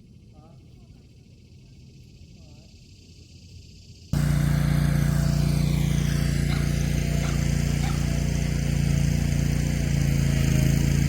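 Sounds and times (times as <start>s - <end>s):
chainsaw cutting tree trunk: 4.2s - 11.0s.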